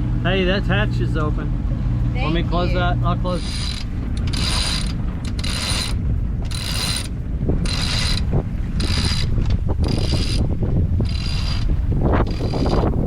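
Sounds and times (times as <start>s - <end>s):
steady low rumble: 0.0s - 13.0s
winch ratcheting: 3.3s - 13.0s.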